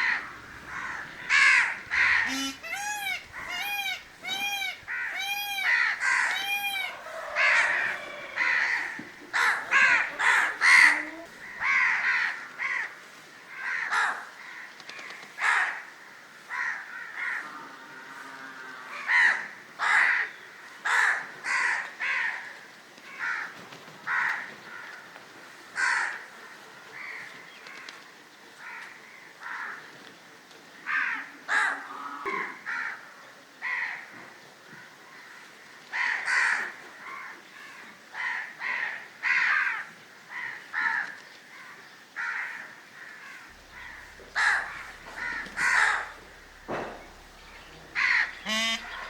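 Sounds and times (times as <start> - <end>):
crows cawing: 0.0 - 15.9, 16.5 - 17.6, 18.9 - 22.4, 23.1 - 23.5, 24.1 - 25.1, 25.8 - 26.3, 33.6 - 34.1, 35.9 - 49.0.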